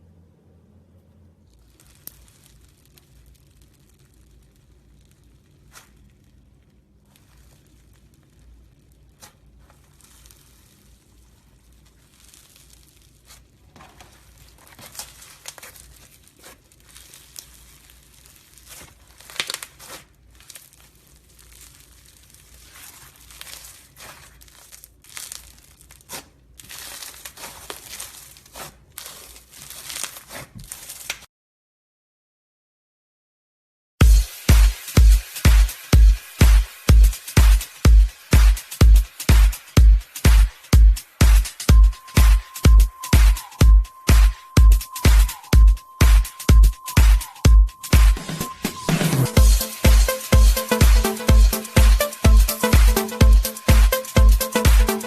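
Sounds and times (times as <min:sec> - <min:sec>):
slime crackling and popping: 0:01.4 - 0:31.3.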